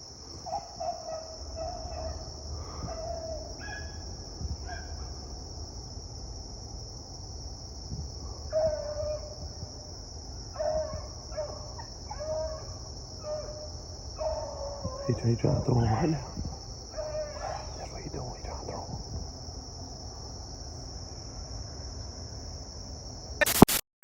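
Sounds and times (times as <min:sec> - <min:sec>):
beagles baying: 0:00.0 - 0:05.4, 0:08.2 - 0:19.1
crickets chirring: 0:00.0 - 0:23.7.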